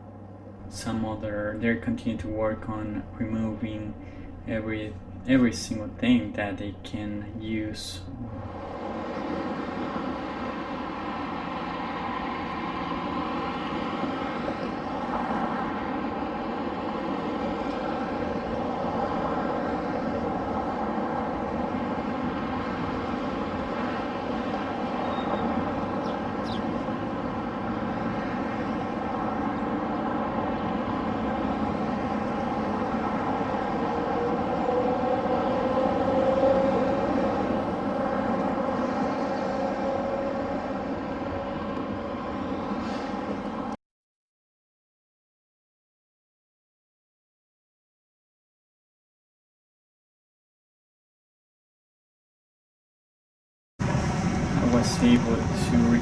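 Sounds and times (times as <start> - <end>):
engine running: 0.0 - 43.7, 53.8 - 56.0
steady tones: 0.6 - 11.2.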